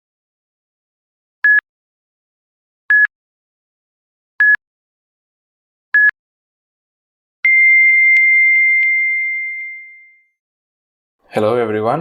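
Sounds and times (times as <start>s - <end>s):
steady electronic tone: 7.5s - 10.4s.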